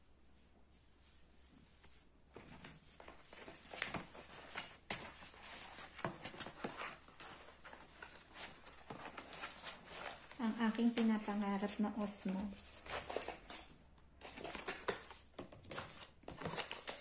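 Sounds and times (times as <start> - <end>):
packaging rustling: 3.0 - 17.0.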